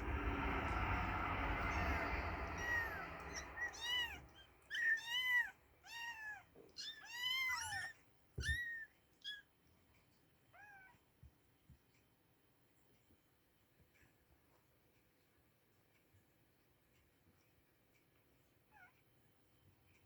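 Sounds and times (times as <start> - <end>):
kittens mewing: 1.4 - 6.4.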